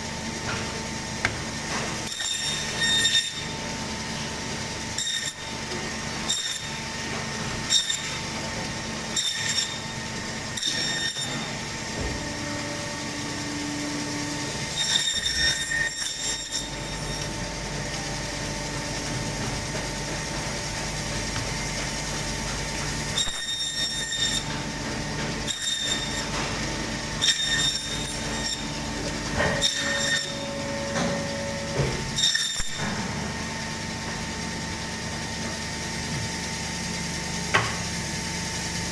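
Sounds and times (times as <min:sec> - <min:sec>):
meat bandsaw running: 0:00.0 - 0:38.9
bandsaw blade rasping through bone: 0:14.2 - 0:17.4, 0:23.2 - 0:24.6, 0:25.6 - 0:26.6, 0:29.4 - 0:30.7.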